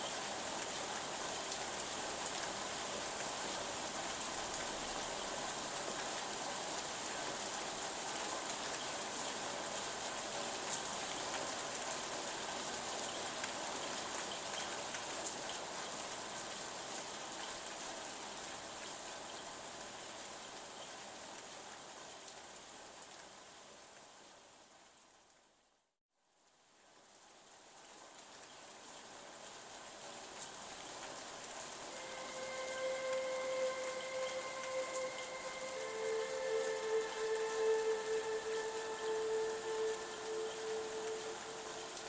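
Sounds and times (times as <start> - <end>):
steady rain falling: 0.0 - 42.0.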